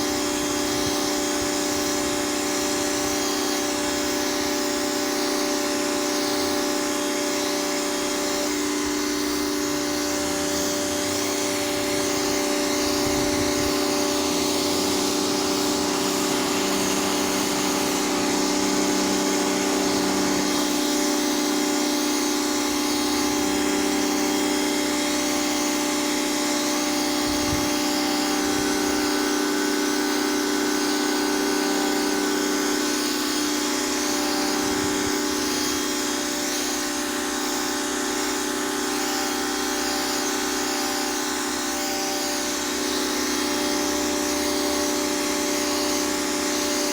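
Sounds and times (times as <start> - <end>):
water jet hissing: 0.0 - 29.6
pressure washer motor hum: 0.0 - 46.9.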